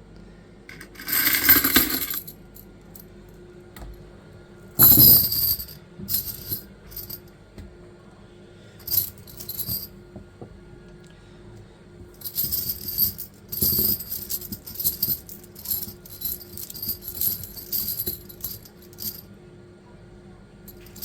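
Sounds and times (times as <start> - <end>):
metal chain links clinking: 0.7 - 2.3, 4.8 - 7.2, 8.8 - 9.9, 12.2 - 19.2, 20.7 - 21.0.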